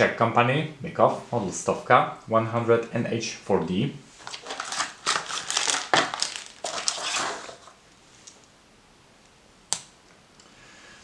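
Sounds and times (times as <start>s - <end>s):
rustling and crinkling: 4.1s - 8.5s.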